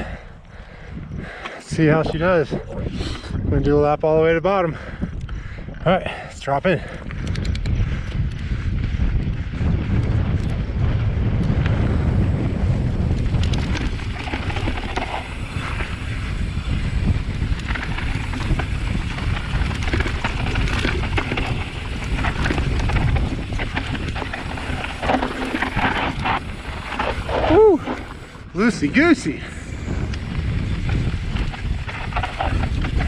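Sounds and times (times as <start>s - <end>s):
wind buffeting microphone: 0.0s - 33.0s
bike clattering over bumps: 9.3s - 28.4s, 30.0s - 33.0s
tyres crunching on dirt: 17.4s - 28.4s.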